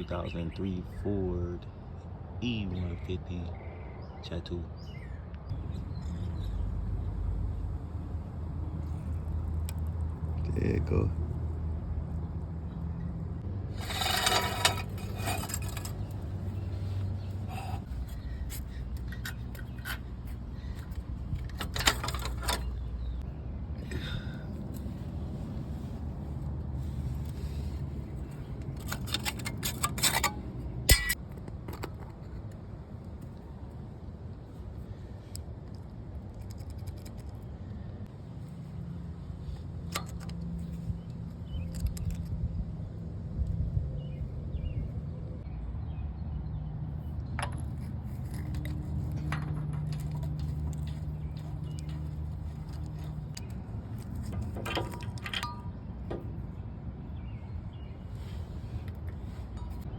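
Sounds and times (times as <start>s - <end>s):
metal tools clicking and clinking: 13.8s - 16.4s, 18.6s - 22.9s, 28.6s - 31.2s, 47.4s - 56.2s
metal clang: 29.0s - 31.2s, 54.3s - 56.3s.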